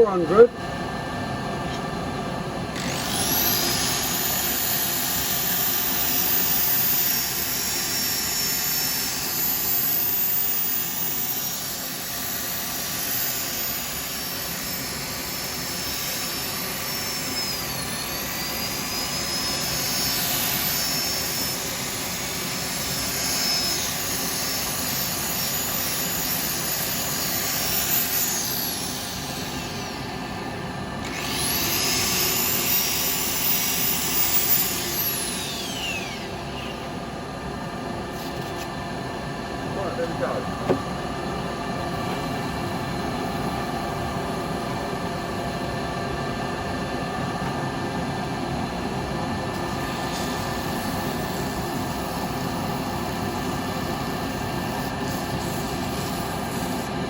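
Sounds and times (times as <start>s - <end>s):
motor whine: 0.0s - 57.0s
wood lathe running: 2.8s - 7.8s, 31.0s - 36.7s.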